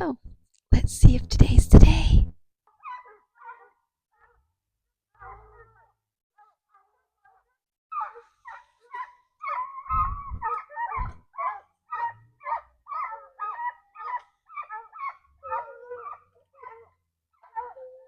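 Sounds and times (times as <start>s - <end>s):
low thumps: 0.2s - 2.4s, 9.9s - 11.2s
dogs barking and yelping: 2.7s - 4.4s, 5.1s - 18.0s.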